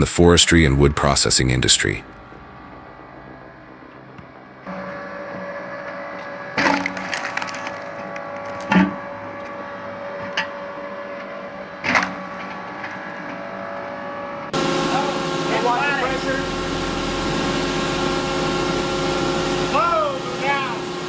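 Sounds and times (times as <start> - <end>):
log splitter humming: 0.0 - 21.0
logs cracking and splintering: 6.1 - 9.6.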